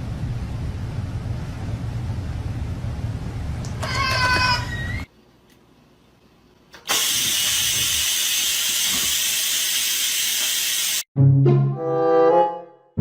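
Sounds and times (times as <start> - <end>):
loud steady hiss: 6.8 - 11.1.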